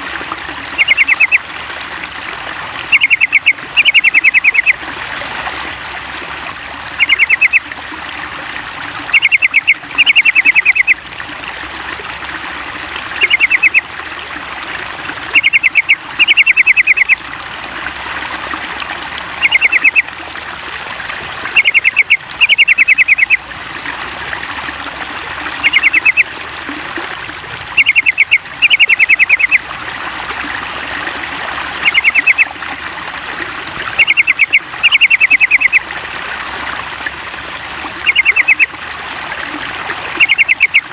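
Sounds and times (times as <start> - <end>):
running water trickling: 0.0 - 40.9
bird song high repeated notes: 0.8 - 1.4, 2.9 - 4.8, 7.0 - 7.7, 9.1 - 11.0, 13.2 - 13.8, 15.3 - 17.2, 19.4 - 20.1, 21.6 - 23.4, 25.6 - 26.3, 27.8 - 29.6, 31.8 - 32.5, 34.0 - 35.8, 38.0 - 38.7, 40.2 - 40.9.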